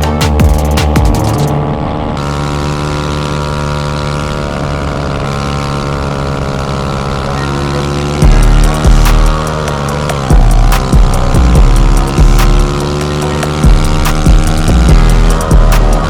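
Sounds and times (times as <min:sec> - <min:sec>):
small engine running: 0:00.0 - 0:16.0
loud low burst: 0:08.2 - 0:16.0.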